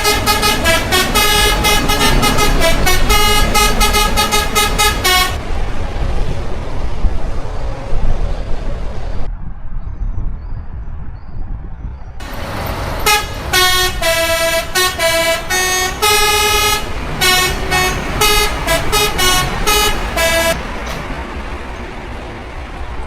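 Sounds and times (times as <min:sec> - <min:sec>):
truck melody horn playing tune: 0:00.0 - 0:06.4, 0:12.2 - 0:21.0
truck engine and road noise: 0:00.0 - 0:23.0.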